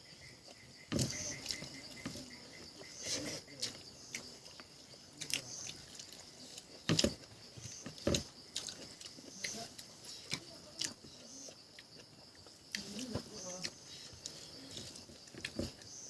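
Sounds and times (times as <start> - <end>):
wet chewing and lip-smacking: 2.8 - 12.9.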